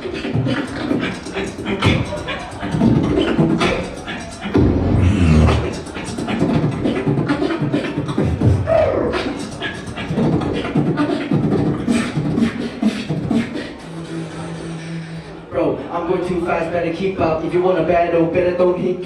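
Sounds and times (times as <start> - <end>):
rising vocal glide: 0.0 - 15.5
beatboxing: 0.0 - 19.0
hummed bass tones: 4.6 - 5.8.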